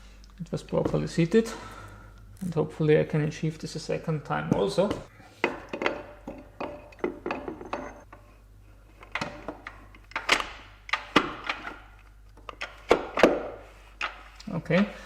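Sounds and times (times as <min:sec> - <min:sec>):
metallic clinks and knocks: 0:05.5 - 0:08.2.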